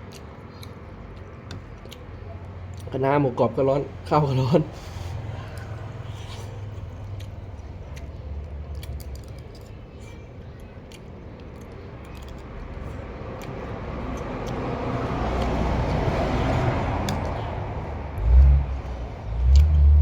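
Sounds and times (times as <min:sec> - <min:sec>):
passing vehicle rush: 0:04.5 - 0:07.2, 0:13.6 - 0:20.0.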